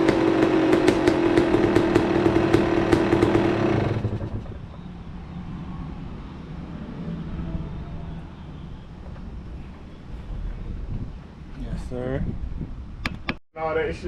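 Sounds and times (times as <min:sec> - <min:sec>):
two-stroke engine idling: 0:00.0 - 0:04.9.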